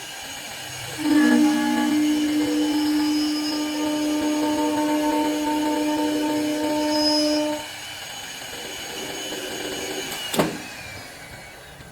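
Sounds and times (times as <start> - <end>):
wood lathe machine whine: 0.0 - 11.9
machine hum: 0.1 - 9.3.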